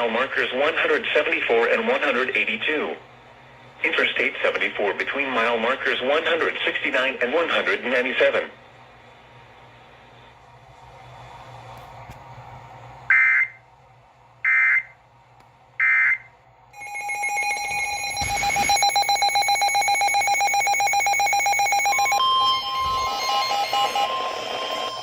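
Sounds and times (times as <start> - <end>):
loud pulsing alert tone: 16.8 - 25.0
shrill digital data bursts: 16.8 - 25.0
steady alert tone: 16.8 - 25.0.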